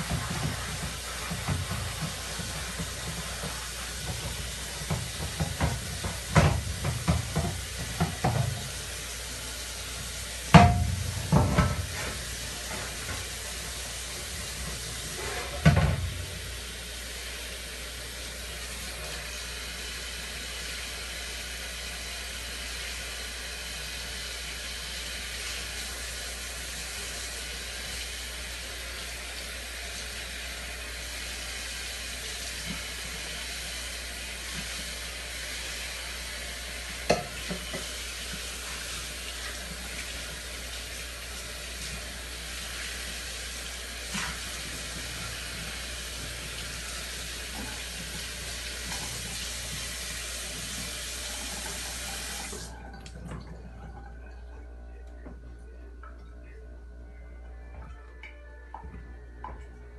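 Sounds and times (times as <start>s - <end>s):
running tap water: 0.0s - 54.6s
dishes clinking: 37.1s - 37.9s.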